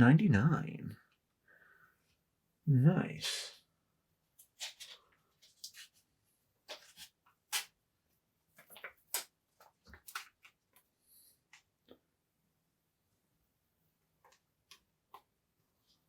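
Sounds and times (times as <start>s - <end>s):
cards and wrapper rustling: 4.4s - 6.0s, 8.6s - 10.8s.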